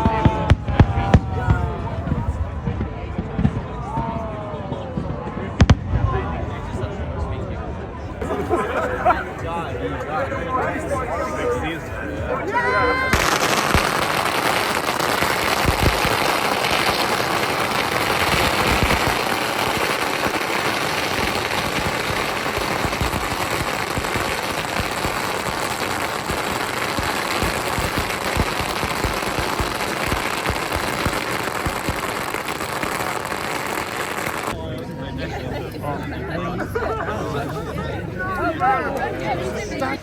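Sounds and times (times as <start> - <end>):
fireworks crackling and popping: 0.0 - 4.2, 10.8 - 34.6.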